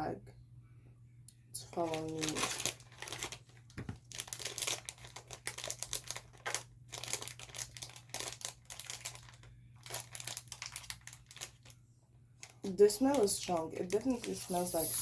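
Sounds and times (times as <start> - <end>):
faint steady hum: 0.0 - 15.0
plastic snack bag crinkling: 1.8 - 11.8, 12.4 - 12.7.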